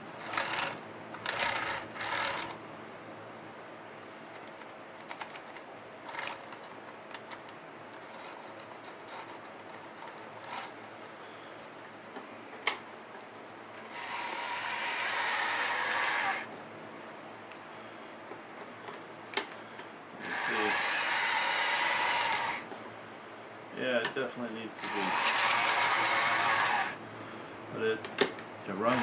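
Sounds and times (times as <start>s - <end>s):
model locomotive motor hum: 0.2s - 2.6s, 13.8s - 16.5s, 20.2s - 22.6s, 24.8s - 27.0s, 28.7s - 29.0s.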